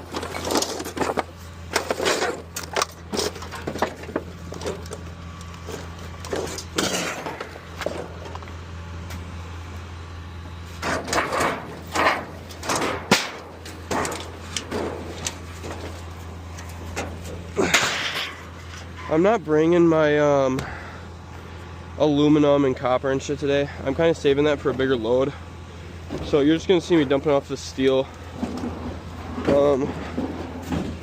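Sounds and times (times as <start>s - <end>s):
scrap metal clanking and crashing: 0.0s - 8.5s, 10.7s - 19.4s, 26.0s - 31.0s
steady low hum: 0.0s - 31.0s.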